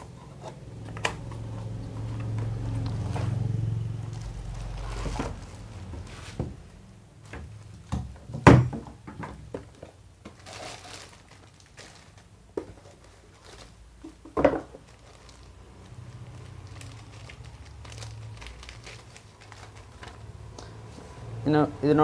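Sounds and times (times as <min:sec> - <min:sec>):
packing rustle: 0:02.0 - 0:06.4, 0:10.3 - 0:20.3.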